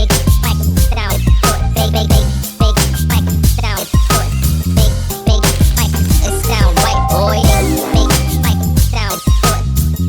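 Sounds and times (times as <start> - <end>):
rapping over a heavy bass beat: 0.0 - 9.9.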